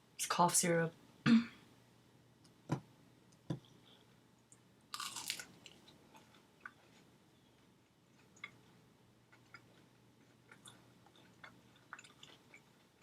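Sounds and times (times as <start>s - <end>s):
soft chewing: 3.6s - 13.0s
crunchy bite: 4.9s - 5.8s.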